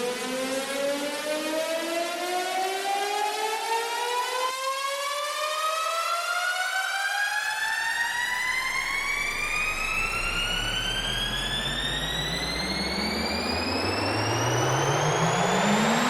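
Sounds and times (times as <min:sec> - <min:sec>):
buzzy synth tone rising: 0:07.7 - 0:16.0
low synth tone climbing: 0:07.8 - 0:16.0
deep bass rumble: 0:08.3 - 0:15.8.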